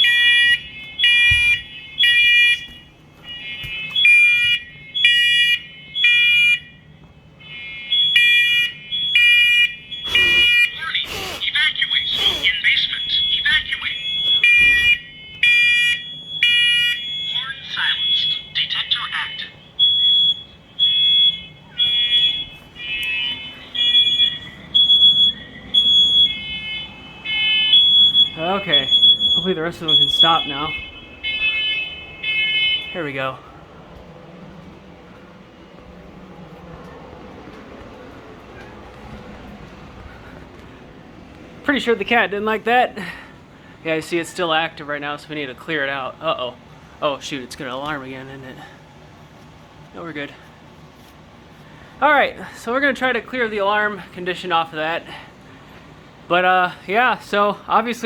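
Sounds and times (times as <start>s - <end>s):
smoke alarms beeping: 0.0s - 33.6s.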